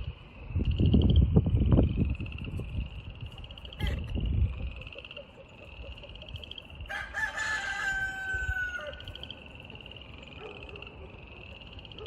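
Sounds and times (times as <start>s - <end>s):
rooster crowing: 6.8s - 9.2s.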